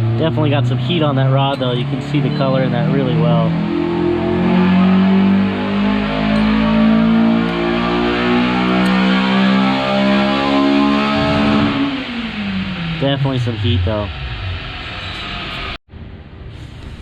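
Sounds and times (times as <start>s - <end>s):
guitar background music: 0.9s - 3.4s, 4.8s - 11.7s.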